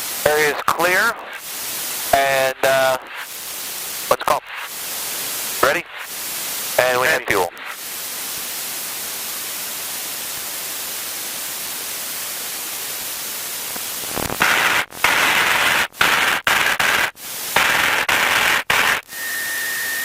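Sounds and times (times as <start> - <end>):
intercom static hiss: 0.0 - 20.0
short steady tone: 19.1 - 20.0.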